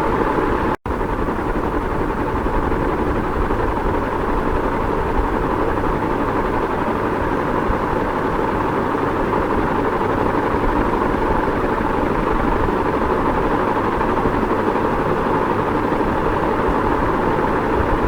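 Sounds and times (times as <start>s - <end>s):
ceiling fan running: 0.0s - 18.0s.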